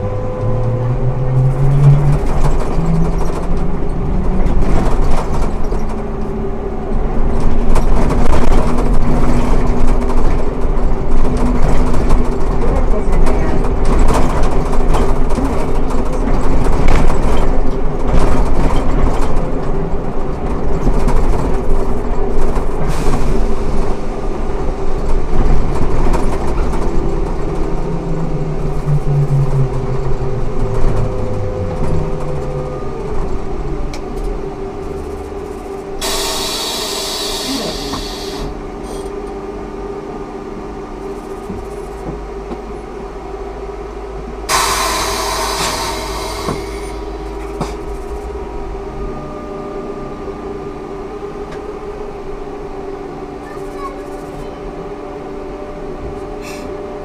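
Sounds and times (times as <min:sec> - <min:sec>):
trolleybus motor whine: 0:00.0 - 0:57.0
compressed air hiss: 0:36.0 - 0:38.5.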